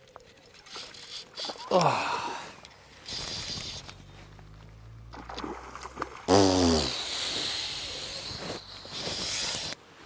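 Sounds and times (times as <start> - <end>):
fish splashing in water: 5.1 - 9.4.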